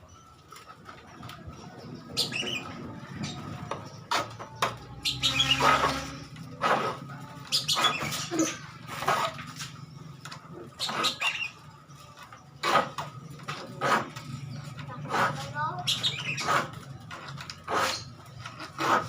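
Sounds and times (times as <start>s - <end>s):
file rasping on saw teeth: 17.6s - 19.0s.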